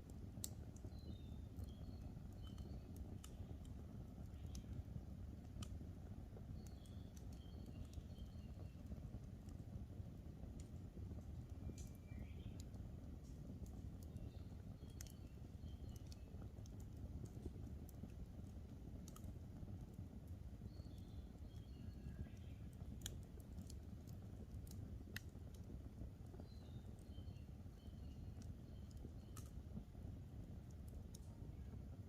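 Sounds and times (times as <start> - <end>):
campfire crackling and popping: 0.0 - 32.0
faint bird chirps: 0.5 - 9.6, 11.4 - 13.0, 13.6 - 17.6, 20.5 - 23.8, 26.3 - 30.0.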